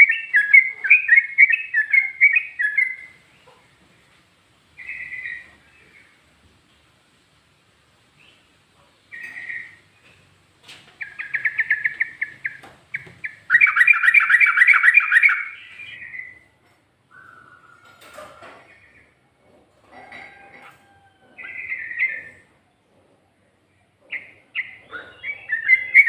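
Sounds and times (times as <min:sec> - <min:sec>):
bulbul singing rapid phrases: 0:00.0 - 0:03.2, 0:11.0 - 0:16.5.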